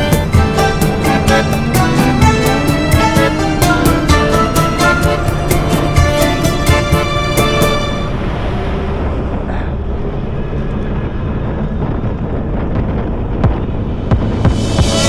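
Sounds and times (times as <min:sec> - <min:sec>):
background music: 0:00.0 - 0:08.3
moving vehicle rumble: 0:00.0 - 0:15.0
wind buffeting microphone: 0:00.0 - 0:15.0.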